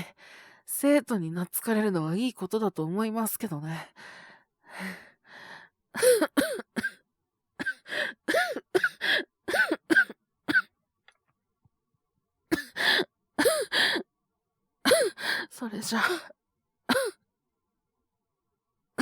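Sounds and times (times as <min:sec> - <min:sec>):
breathy breaths: 0:03.9 - 0:06.2
man coughing: 0:16.9 - 0:17.1.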